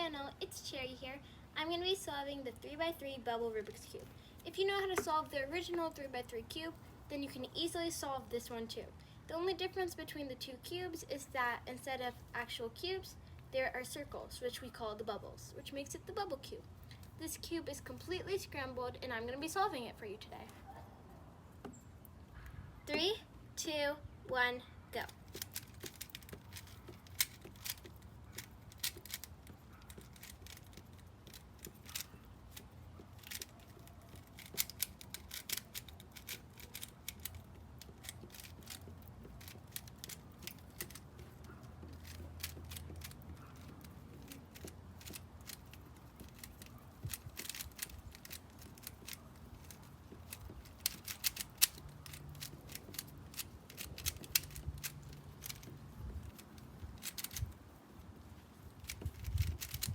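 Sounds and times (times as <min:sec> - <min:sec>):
puzzle cube clicking: 0:25.0 - 0:57.6, 0:58.2 - 0:59.9.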